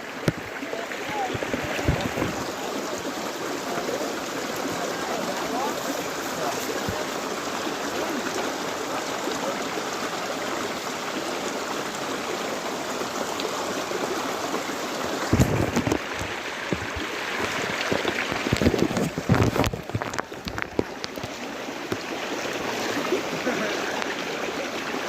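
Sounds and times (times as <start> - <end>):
stream water rushing: 0.0 - 25.0
dull low thumps and knocks: 1.4 - 2.4, 15.2 - 20.9.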